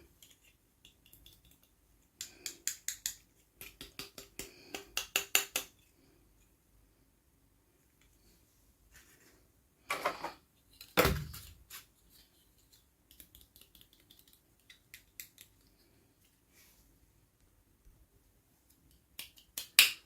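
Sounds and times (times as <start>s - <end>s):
light clicks of toy pieces: 0.1s - 5.8s, 11.7s - 16.4s, 18.7s - 20.0s.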